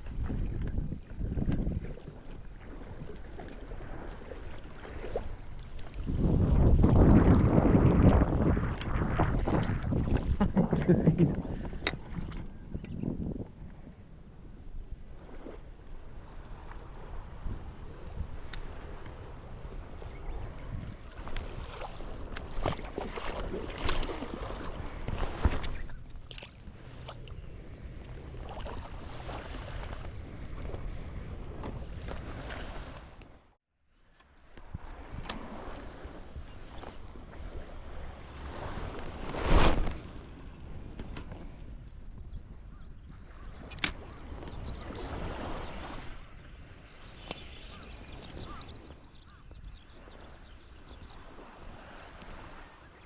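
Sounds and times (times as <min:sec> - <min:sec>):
wind rumbling on microphone: 0:00.0 - 0:33.5, 0:34.4 - 0:53.0
sea noise on shore: 0:00.0 - 0:53.0
sea waves washing on shore: 0:15.0 - 0:33.4, 0:34.7 - 0:41.8.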